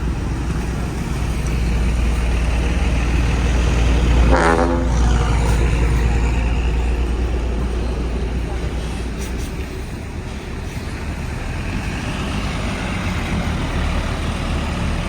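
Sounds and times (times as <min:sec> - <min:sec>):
bus engine rumble: 0:00.0 - 0:15.0
bus horn toot: 0:04.2 - 0:05.6.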